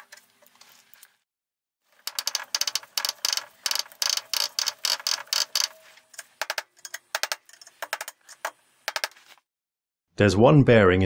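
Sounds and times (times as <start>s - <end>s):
sharp metallic clicks: 2.0s - 9.2s.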